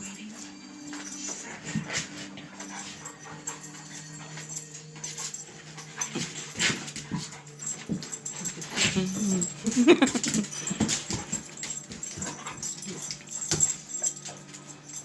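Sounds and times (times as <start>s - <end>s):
dogs panting and sniffing: 0.0s - 15.0s.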